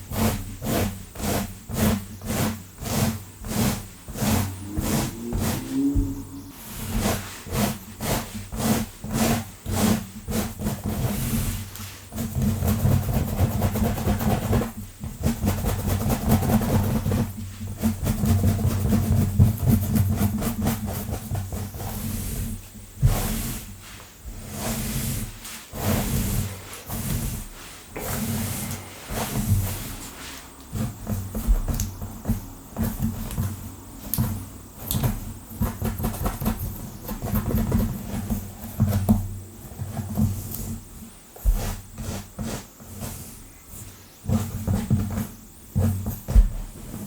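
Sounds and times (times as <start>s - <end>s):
nails scratching scalp: 0.2s - 9.4s
low rumble: 4.4s - 7.1s.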